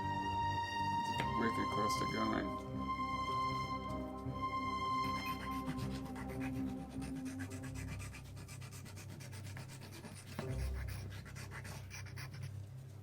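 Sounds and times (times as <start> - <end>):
hand sanding rubbing strokes: 5.0 - 12.4.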